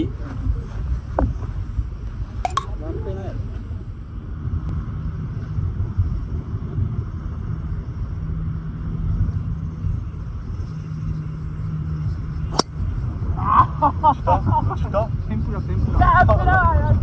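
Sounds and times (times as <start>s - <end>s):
wind buffeting microphone: 0.0s - 17.0s
golf club striking ball: 2.4s - 2.8s, 12.5s - 12.9s.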